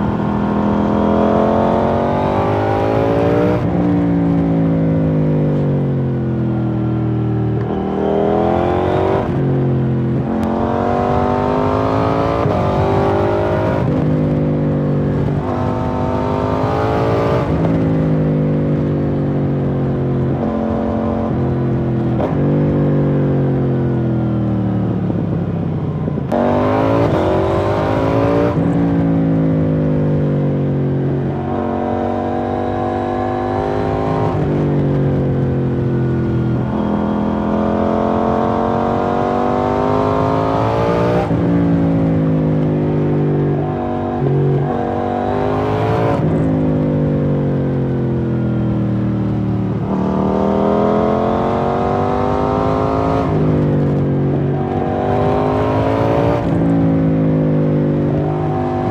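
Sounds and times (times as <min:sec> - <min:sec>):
motorcycle engine revving: 0:00.0 - 0:58.9.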